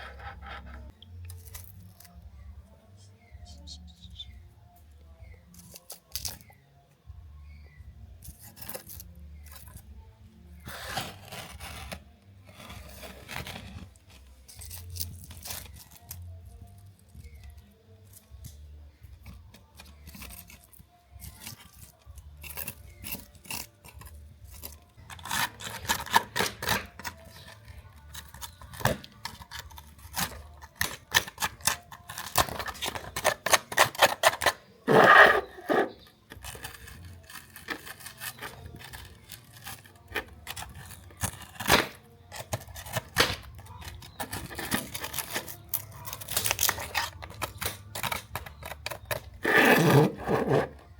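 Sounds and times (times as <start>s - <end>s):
scraping rub: 0.0s - 2.1s, 10.6s - 16.4s, 19.7s - 50.9s
toy car parts clicking: 36.3s - 50.7s.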